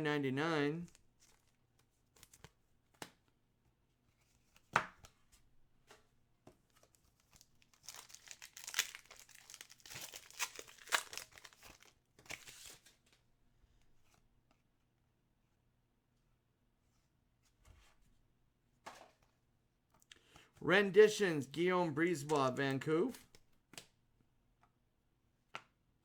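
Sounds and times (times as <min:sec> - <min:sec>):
wrapper tearing and crinkling: 0:07.3 - 0:12.8.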